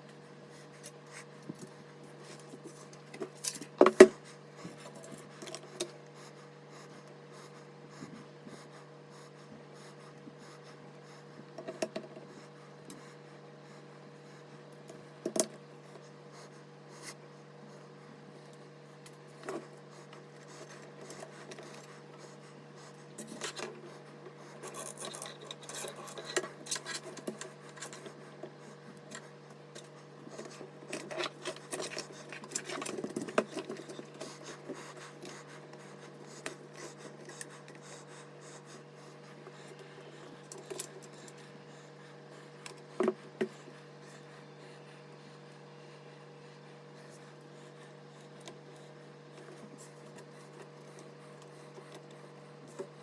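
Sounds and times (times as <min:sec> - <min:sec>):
steady low hum: 0:00.0 - 0:53.0
hands rubbing and scraping parts: 0:18.4 - 0:37.8.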